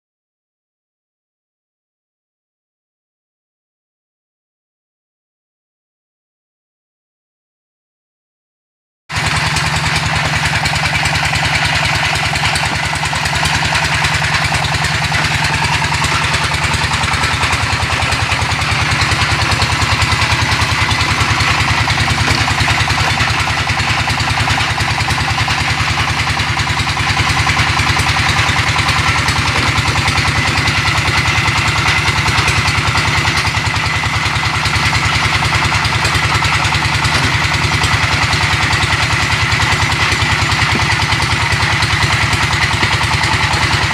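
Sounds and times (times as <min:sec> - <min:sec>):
brick press machine rattling: 0:09.1 - 0:43.9.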